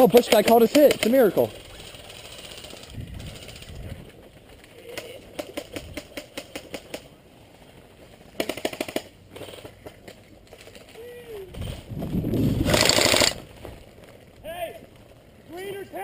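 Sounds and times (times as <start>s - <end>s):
airsoft guns firing bursts: 0.0s - 3.8s, 8.4s - 9.6s, 12.6s - 13.4s.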